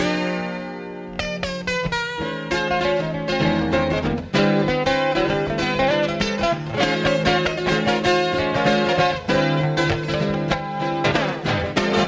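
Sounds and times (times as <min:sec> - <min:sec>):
live band guitar instrumental: 0:00.0 - 0:12.0.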